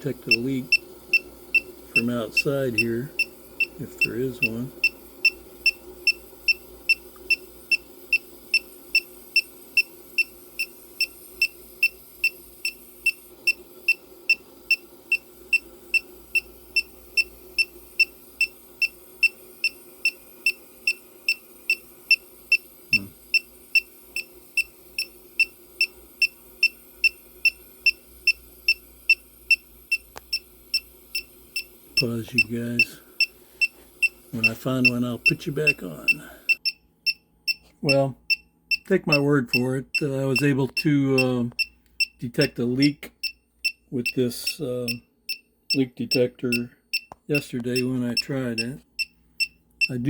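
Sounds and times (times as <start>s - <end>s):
leak detector beeping: 0.0s - 50.0s.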